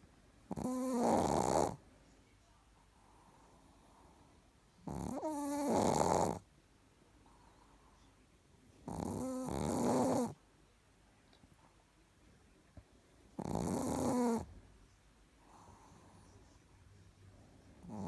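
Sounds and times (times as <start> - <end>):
dog snoring: 0.5 - 1.8, 3.2 - 6.5, 8.8 - 10.4, 13.3 - 14.5, 17.8 - 18.0.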